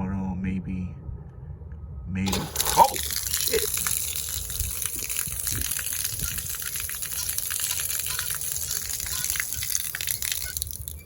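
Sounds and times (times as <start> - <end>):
hose spigot gushing water: 2.3 - 11.0.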